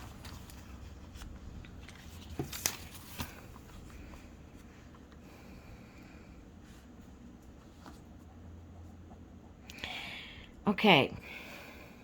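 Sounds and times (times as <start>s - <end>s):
paper rustling: 0.0s - 5.0s
low steady hum: 0.0s - 12.0s.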